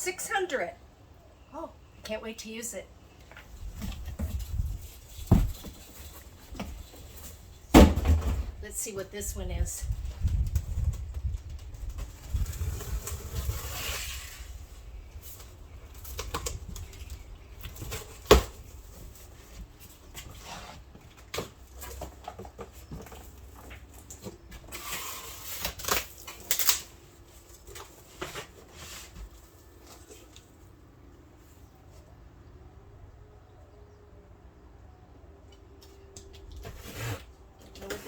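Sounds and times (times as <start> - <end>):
cardboard box rustling and scraping: 3.6 - 7.6, 11.9 - 16.2, 17.8 - 26.5, 27.2 - 30.4, 36.6 - 38.0.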